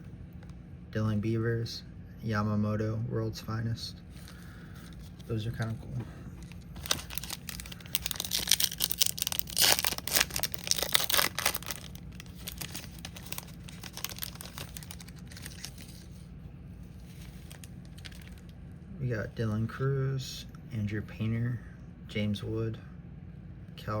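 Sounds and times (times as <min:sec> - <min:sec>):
cards rustling: 0:04.1 - 0:16.3, 0:16.9 - 0:18.5
card pack wrapper tearing: 0:06.4 - 0:16.2, 0:17.1 - 0:18.5.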